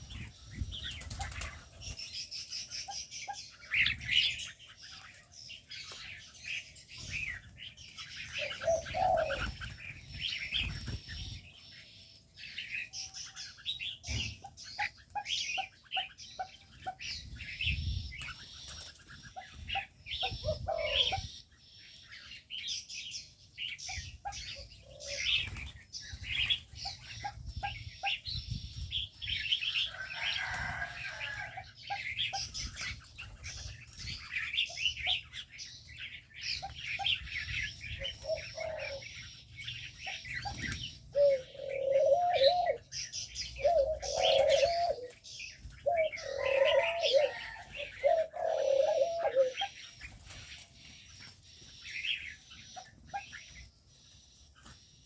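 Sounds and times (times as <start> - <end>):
small birds chirping: 0.0 - 55.0
doves cooing: 2.7 - 11.6, 12.6 - 21.5, 23.9 - 28.3, 28.9 - 50.8.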